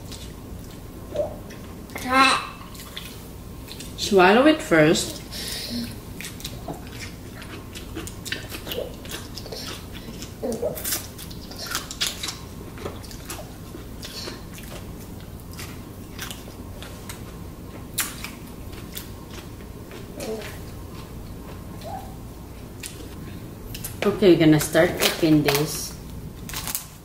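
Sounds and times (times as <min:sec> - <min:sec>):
chewing and mouth smacks: 0:05.8 - 0:22.1, 0:22.8 - 0:24.0.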